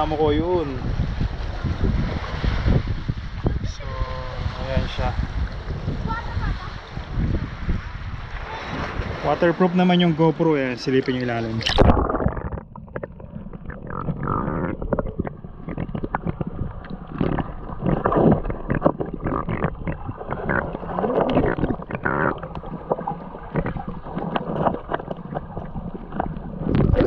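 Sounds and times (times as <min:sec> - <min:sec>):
muffled underwater water rumble: 0:10.8 - 0:27.0
crackling clicks: 0:11.2 - 0:27.0
bubbly gurgles: 0:11.5 - 0:27.0.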